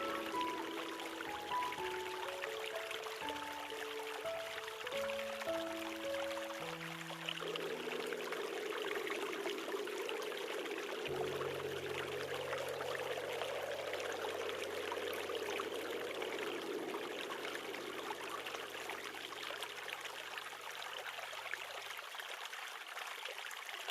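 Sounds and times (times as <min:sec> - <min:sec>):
low steady hum: 0:11.1 - 0:18.7.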